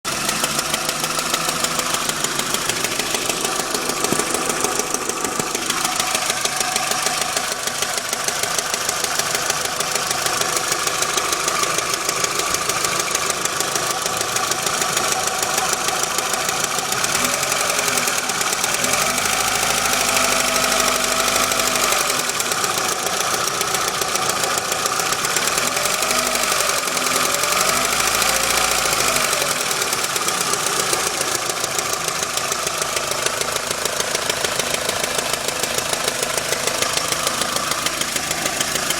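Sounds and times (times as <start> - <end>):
car engine running: 0.0 - 38.9.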